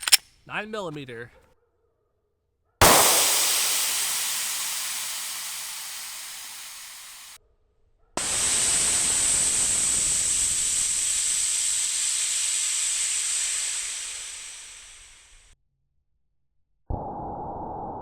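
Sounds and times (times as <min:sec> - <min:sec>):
gas hissing from pipe: 0:02.8 - 0:07.4, 0:08.2 - 0:15.4
hiss with high whistling: 0:02.8 - 0:07.4, 0:08.2 - 0:15.4.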